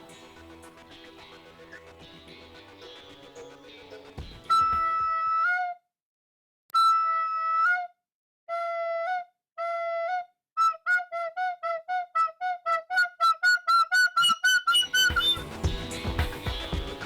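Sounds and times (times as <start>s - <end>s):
flute-like melody: 8.5s - 17.0s.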